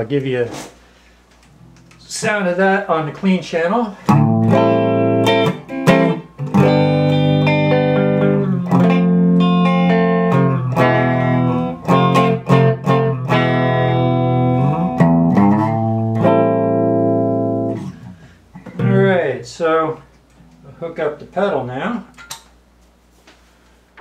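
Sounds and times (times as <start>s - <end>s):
electric guitar strumming: 4.0s - 19.8s.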